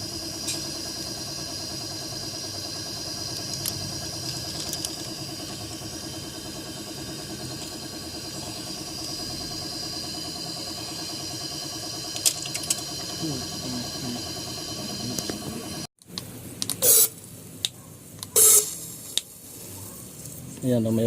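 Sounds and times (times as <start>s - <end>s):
car engine idling: 0.0s - 15.9s
high hiss: 16.8s - 17.2s, 18.4s - 19.3s.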